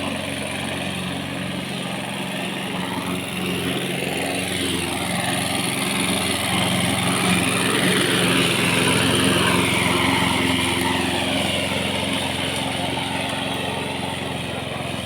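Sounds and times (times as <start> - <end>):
engine running steadily: 0.0 - 15.0.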